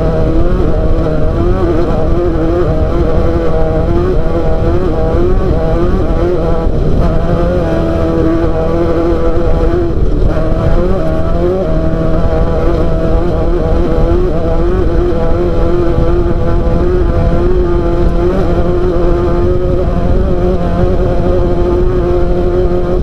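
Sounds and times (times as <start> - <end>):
race car engine revving: 0.0 - 23.0.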